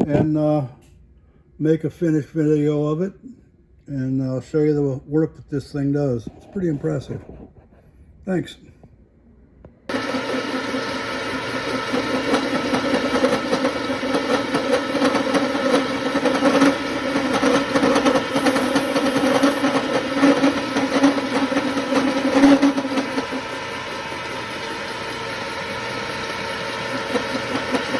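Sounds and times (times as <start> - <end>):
milling machine hum: 9.9 - 27.9
face mill chatter on steel: 11.7 - 23.4.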